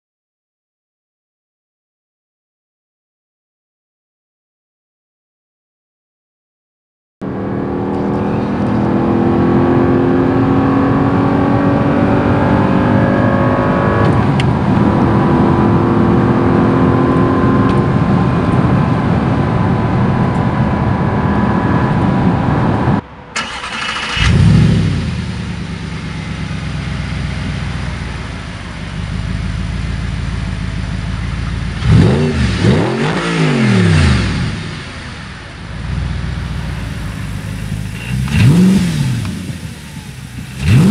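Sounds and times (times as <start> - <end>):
car engine at high revs: 7.2 - 23.0, 23.7 - 40.9
engine idling: 23.4 - 32.0, 34.8 - 40.9
engine rev blips: 31.1 - 40.9.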